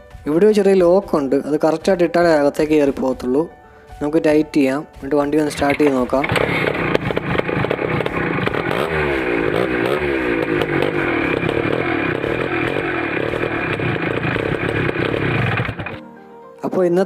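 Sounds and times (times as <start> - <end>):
two-stroke motorcycle engine revving: 5.5 - 16.0.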